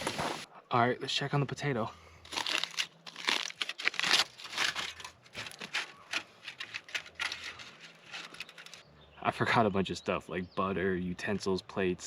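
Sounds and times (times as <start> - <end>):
crinkling and crunching: 2.2 - 8.8.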